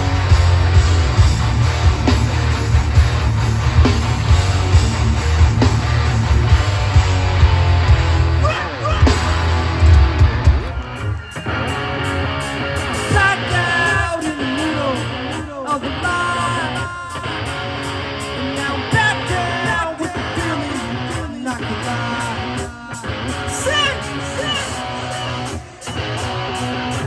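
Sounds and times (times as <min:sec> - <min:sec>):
drums: 0:00.0 - 0:27.0
electric guitars: 0:00.0 - 0:27.0
person singing: 0:10.8 - 0:17.7, 0:18.3 - 0:27.0.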